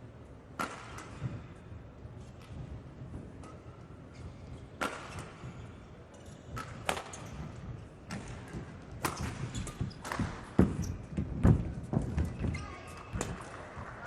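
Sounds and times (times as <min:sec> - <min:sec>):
rackets hitting shuttlecock: 0:00.6 - 0:01.4, 0:04.8 - 0:05.5, 0:06.5 - 0:07.4, 0:12.9 - 0:14.0.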